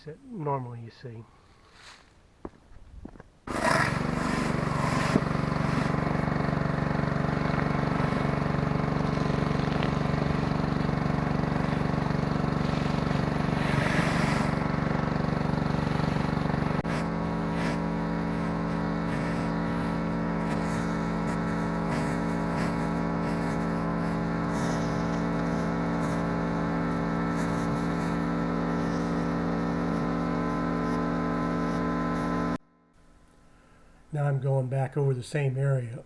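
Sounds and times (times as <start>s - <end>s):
pressure washer engine running: 3.5s - 32.6s
water spray hissing on concrete: 16.8s - 29.1s.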